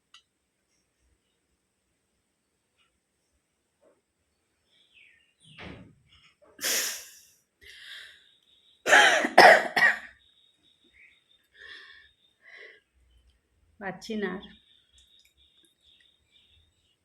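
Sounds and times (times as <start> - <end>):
woman sniffing: 6.6 - 7.2
quick coughs: 8.9 - 10.1.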